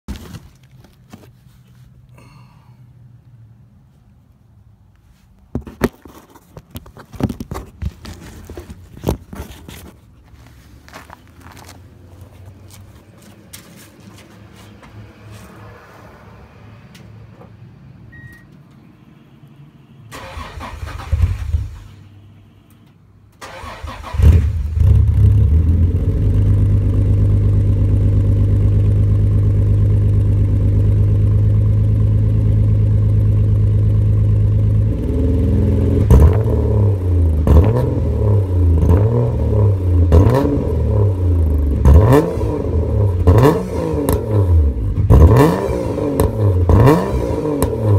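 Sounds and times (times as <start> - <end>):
car engine idling and revving: 10.9 - 47.9.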